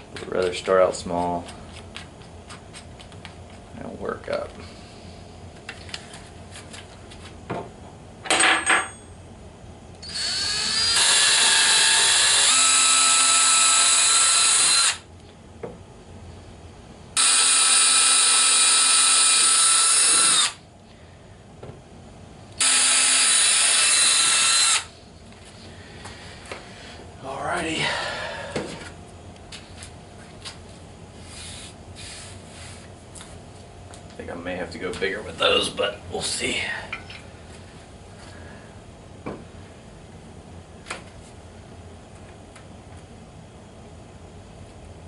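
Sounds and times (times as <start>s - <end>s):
electric drill running: 10.0s - 15.1s, 17.2s - 20.6s, 22.6s - 24.9s.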